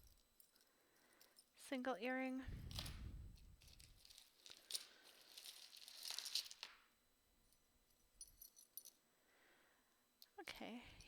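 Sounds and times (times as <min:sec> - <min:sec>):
jewelry clicking and clinking: 0:00.0 - 0:01.6, 0:02.7 - 0:09.1
soft rustle: 0:02.4 - 0:06.9.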